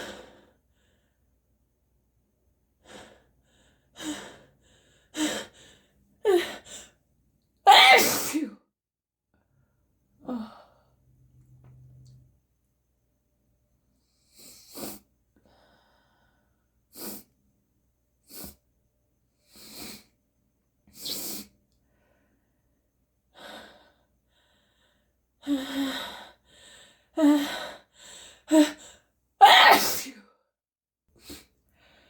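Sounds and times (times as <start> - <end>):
person sneezing: 7.7 - 8.6, 29.4 - 30.2.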